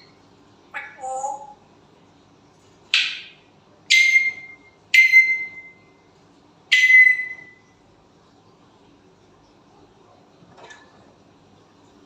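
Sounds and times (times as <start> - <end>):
parrot whistle-like calls: 0.8 - 1.6, 3.0 - 6.0, 6.7 - 7.6.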